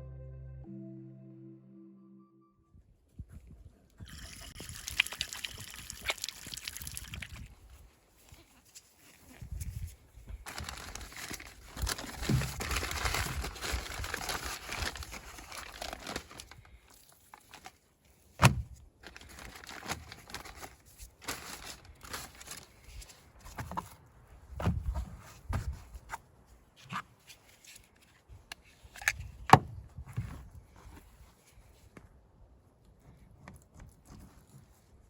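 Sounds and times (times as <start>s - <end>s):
crinkling handling noise: 4.6s - 24.0s.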